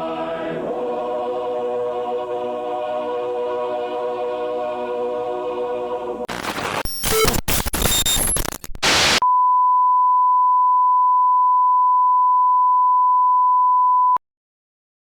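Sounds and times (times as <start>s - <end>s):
choppy broadcast static: 6.3s - 9.2s.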